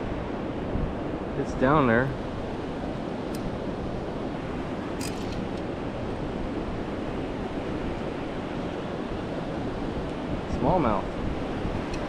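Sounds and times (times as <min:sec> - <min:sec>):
wind buffeting microphone: 0:02.2 - 0:12.0
light clicks: 0:05.0 - 0:05.7.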